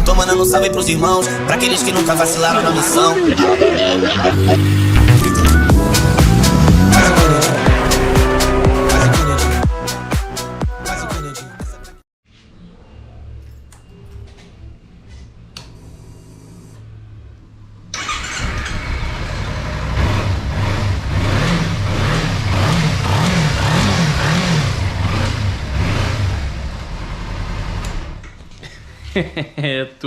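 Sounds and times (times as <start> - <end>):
motorcycle engine revving: 1.0 - 10.1, 15.8 - 28.3.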